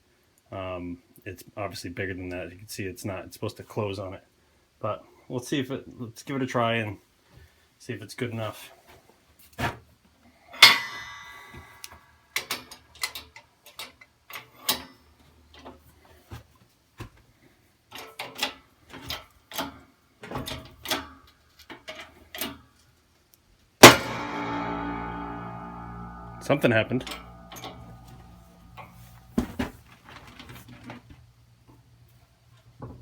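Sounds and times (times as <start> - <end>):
loud bang with metallic ring: 10.6 - 11.9, 23.8 - 29.8
metal crack with short ring: 10.6 - 12.7, 23.8 - 29.6.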